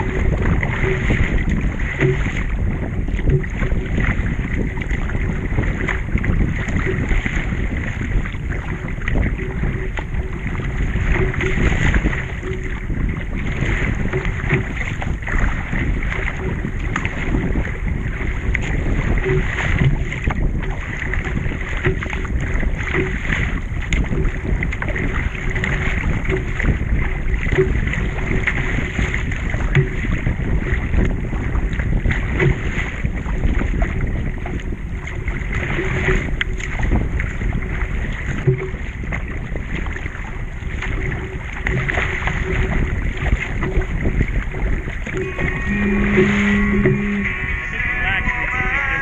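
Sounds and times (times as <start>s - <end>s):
paddle stroke knocks: 0.0s - 4.0s, 21.1s - 25.0s, 41.0s - 48.3s
water splashing along hull: 0.0s - 49.0s
wind buffeting microphone: 0.0s - 49.0s.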